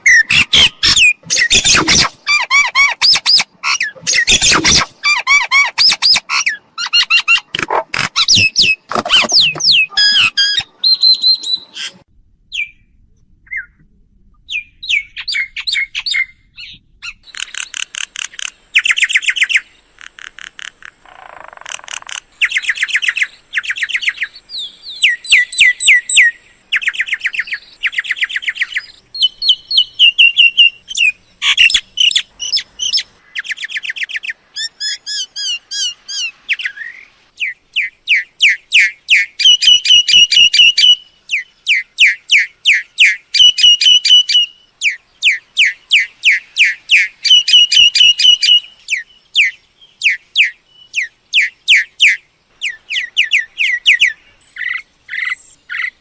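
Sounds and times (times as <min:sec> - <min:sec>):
myna chattering calls: 0:00.1 - 0:10.7, 0:17.1 - 0:23.7.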